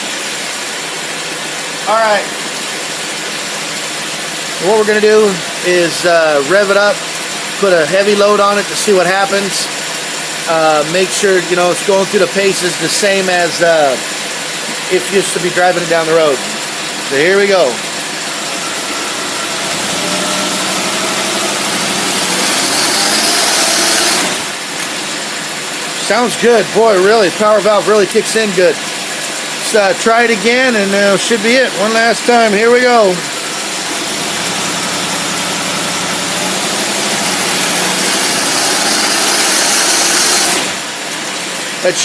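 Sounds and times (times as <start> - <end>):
engine running at high revs: 17.2 - 25.5, 33.8 - 41.0.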